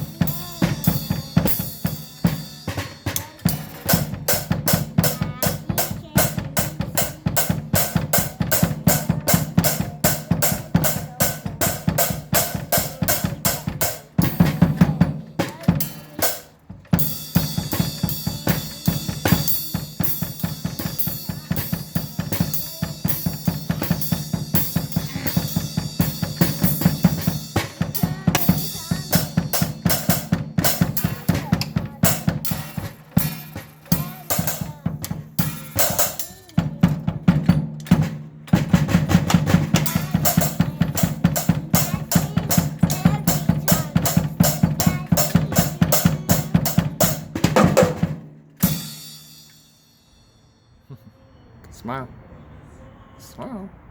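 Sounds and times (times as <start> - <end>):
drum kit fast beat: 0.0 - 50.1.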